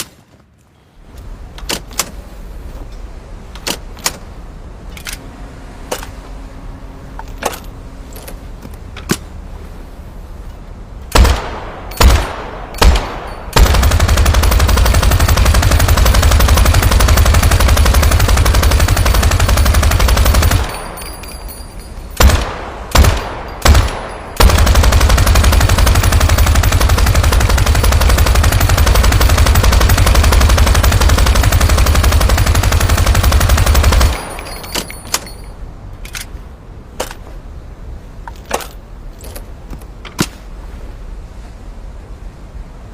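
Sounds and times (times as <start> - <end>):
machine gun firing bursts: 11.2 - 21.1, 22.2 - 34.7.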